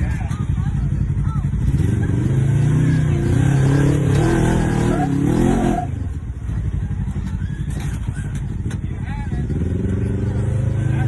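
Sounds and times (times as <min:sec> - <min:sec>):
off-road vehicle engine revving: 0:00.0 - 0:11.0.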